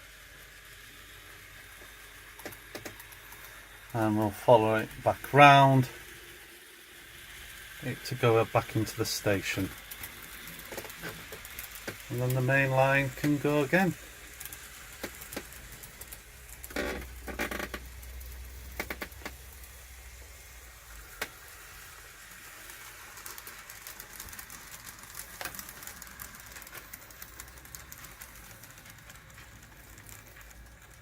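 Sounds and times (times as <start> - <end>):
model train hum: 0.0 - 31.0
model train track clicks: 0.0 - 31.0.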